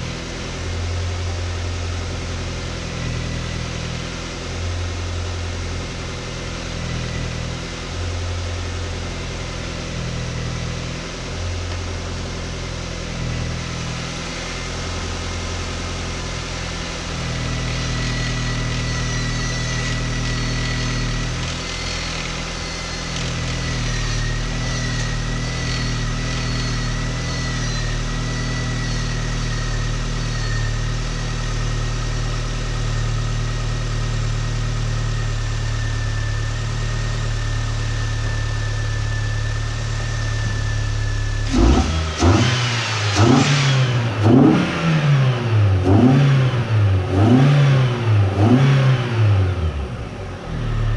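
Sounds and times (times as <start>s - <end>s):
car engine idling: 0.0s - 50.9s
steady high whine: 10.6s - 47.2s.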